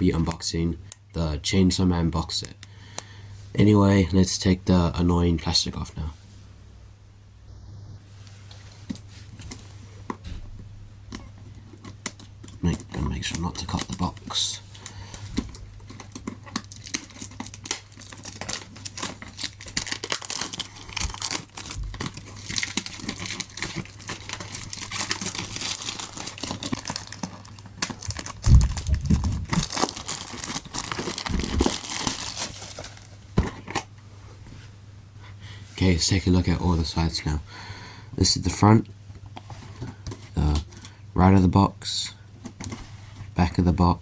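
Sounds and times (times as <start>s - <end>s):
plastic wrap tearing and crinkling: 11.6s - 33.9s.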